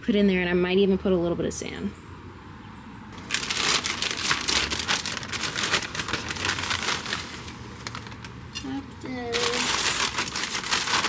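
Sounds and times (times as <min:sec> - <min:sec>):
bark chips and soil rustling: 0:03.1 - 0:11.0.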